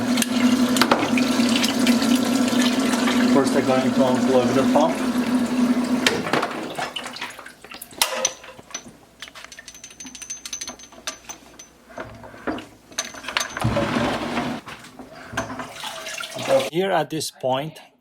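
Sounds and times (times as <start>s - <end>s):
circulation pump humming: 0.0s - 8.6s
liquid trickling: 0.0s - 8.6s, 11.9s - 16.7s
hoses and fittings knocking: 0.0s - 16.2s.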